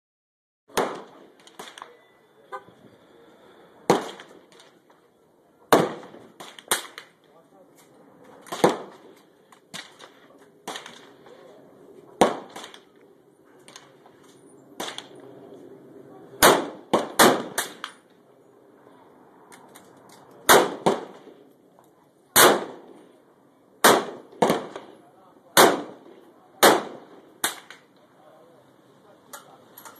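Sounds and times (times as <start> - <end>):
rifle shots: 0.7 - 2.0, 3.9 - 4.7, 5.7 - 7.2, 8.4 - 11.2, 12.2 - 12.9, 14.8 - 15.2, 16.4 - 18.0, 20.5 - 21.4, 22.4 - 23.0, 23.8 - 25.0, 25.6 - 27.8.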